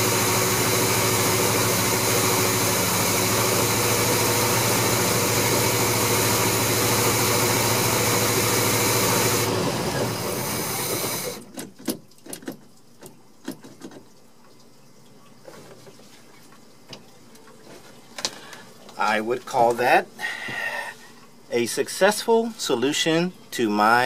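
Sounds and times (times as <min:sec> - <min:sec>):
engine idling: 0:00.0 - 0:11.4.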